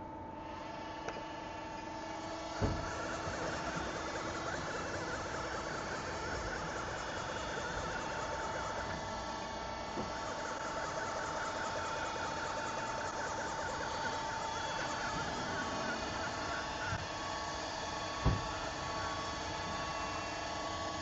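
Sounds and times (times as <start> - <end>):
machine motor hum: 0.0 - 21.0
machine whine: 0.0 - 21.0.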